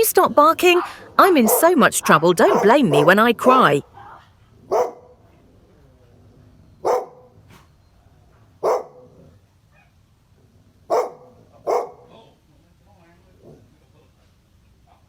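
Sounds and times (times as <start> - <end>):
dog barking: 1.4 - 1.8, 2.4 - 3.7, 4.6 - 5.2, 6.8 - 7.6, 8.6 - 9.2, 10.9 - 12.2.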